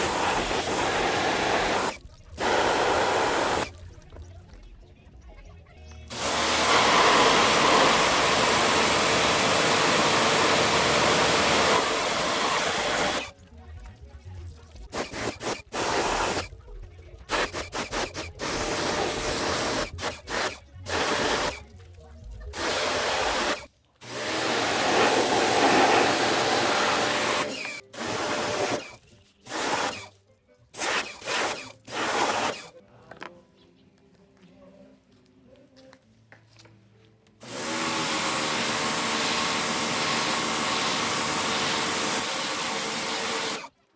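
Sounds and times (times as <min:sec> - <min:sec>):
water spraying: 0:00.0 - 0:04.4, 0:06.1 - 0:13.4, 0:14.3 - 0:16.6, 0:17.3 - 0:30.2, 0:30.8 - 0:32.7.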